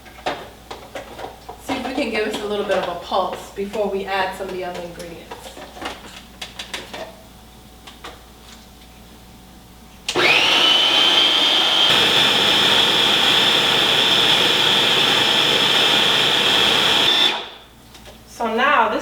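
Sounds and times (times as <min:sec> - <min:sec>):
food processor motor whining: 0:10.1 - 0:17.6.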